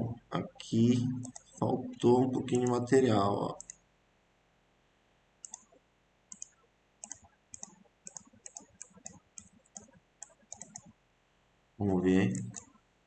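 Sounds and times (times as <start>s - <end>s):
computer mouse clicking: 1.2s - 1.6s, 2.6s - 2.8s, 3.6s - 3.8s, 5.4s - 11.0s, 12.3s - 12.8s.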